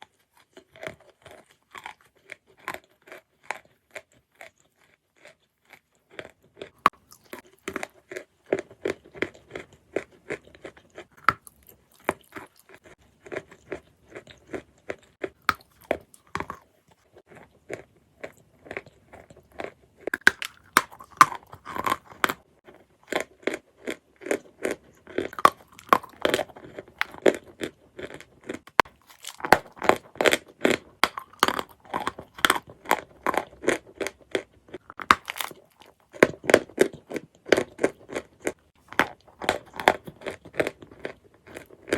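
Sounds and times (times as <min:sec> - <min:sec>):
crunching and chewing: 0:00.0 - 0:41.9.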